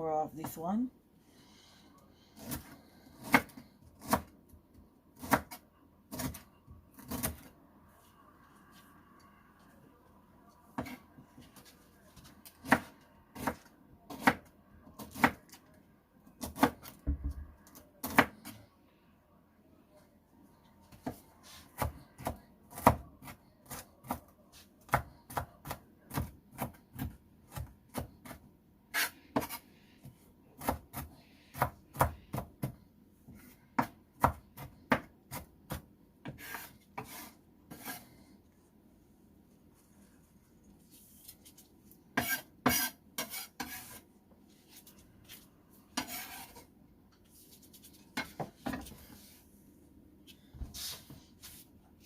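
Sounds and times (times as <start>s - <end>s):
knife chopping on cutting board: 2.4s - 4.3s, 30.6s - 32.8s, 33.8s - 38.0s, 42.2s - 44.0s, 46.0s - 46.6s.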